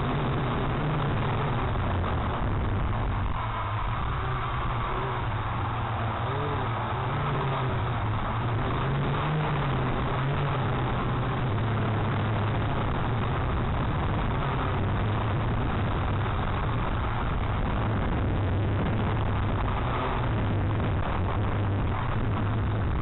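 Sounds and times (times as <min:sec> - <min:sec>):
wind noise: 0:00.0 - 0:23.0
toy drone motors humming: 0:04.1 - 0:07.9.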